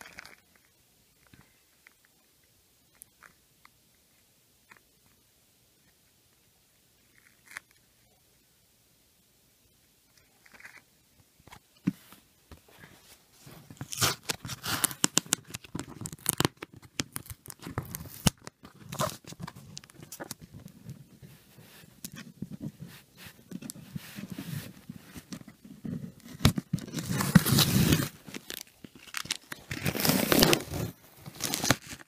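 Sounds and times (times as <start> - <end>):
packaging ripping and crackling: 13.8 - 20.4, 26.3 - 32.0.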